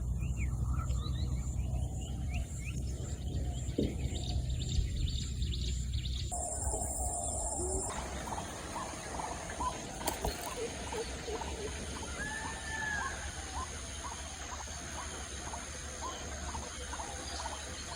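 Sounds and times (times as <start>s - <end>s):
steady low rumble: 0.0s - 12.1s
birds chirping: 0.0s - 17.9s.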